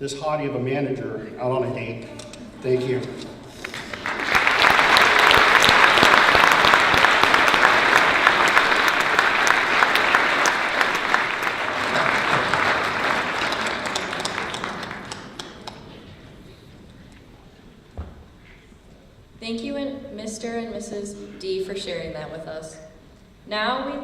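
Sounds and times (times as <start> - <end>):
audience applauding: 2.6 - 16.2.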